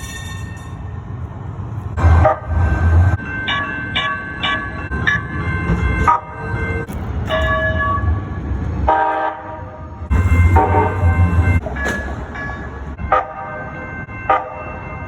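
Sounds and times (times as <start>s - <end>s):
low rumble of train running: 0.0s - 15.0s
train warning bell ringing: 2.0s - 8.4s, 10.1s - 15.0s.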